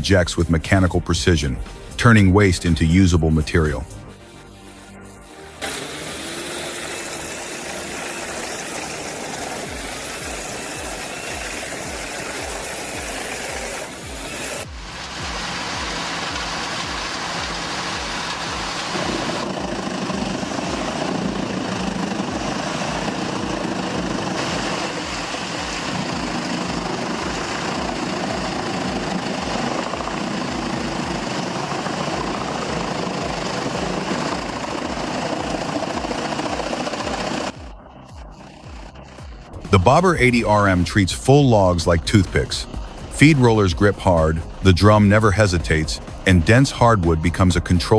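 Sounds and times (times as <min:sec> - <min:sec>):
wood chipper grinding wood: 0:05.2 - 0:40.0.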